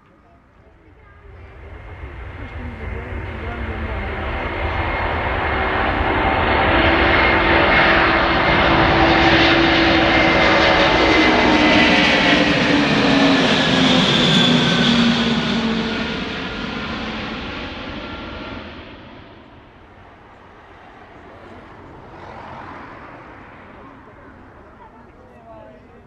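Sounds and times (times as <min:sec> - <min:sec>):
jet aircraft passing: 0:00.2 - 0:26.0.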